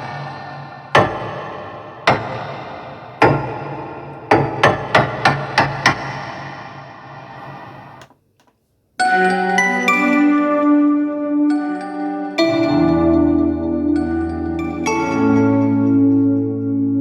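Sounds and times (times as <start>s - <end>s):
percussive synthesizer notes: 0.0s - 8.0s.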